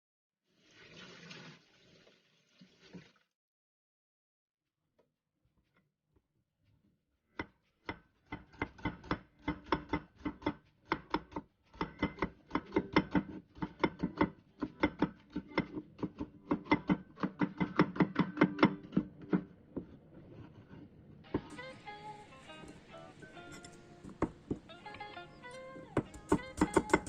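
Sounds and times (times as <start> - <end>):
knife chopping on wooden board: 23.6 - 24.7, 26.0 - 27.0.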